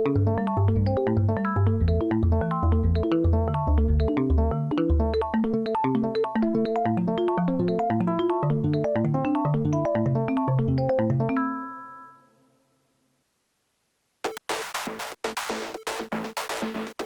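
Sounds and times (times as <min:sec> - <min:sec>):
synthesizer keyboard notes and chord: 0:00.0 - 0:11.3.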